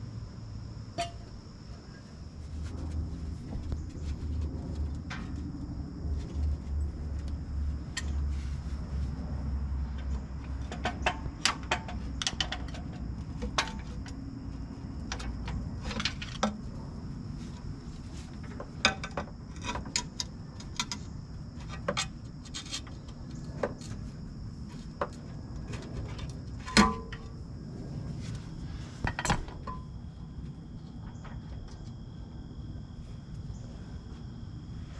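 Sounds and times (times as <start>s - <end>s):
low hum: 0.0s - 18.7s.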